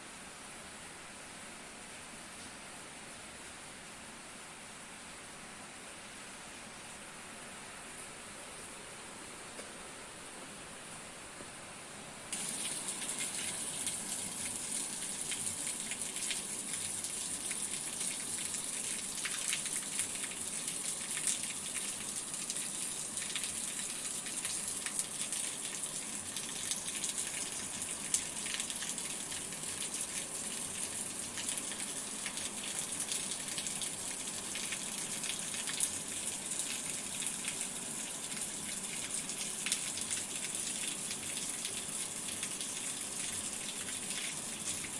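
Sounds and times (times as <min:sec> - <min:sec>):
heavy rain falling: 0:12.4 - 0:18.4.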